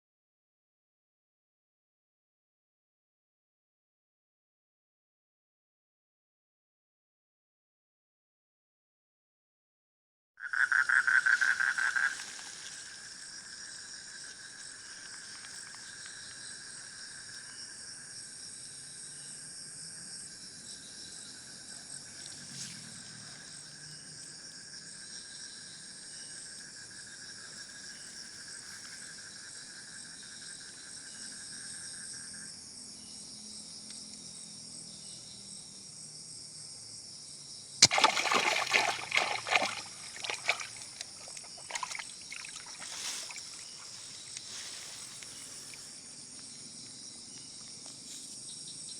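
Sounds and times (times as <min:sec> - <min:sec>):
insects trilling: 0:10.4 - 0:48.9
splashing in water: 0:11.2 - 0:13.2, 0:37.8 - 0:44.5.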